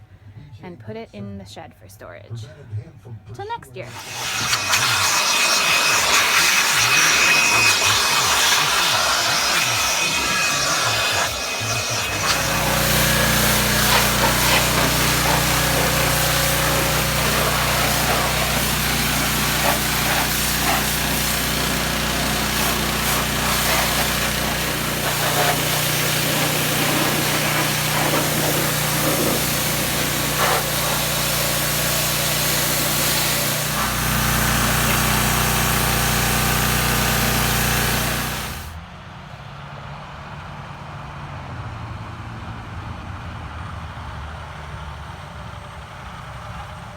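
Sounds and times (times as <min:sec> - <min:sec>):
small engine running: 0:03.9 - 0:38.8
spray hissing: 0:03.9 - 0:38.8.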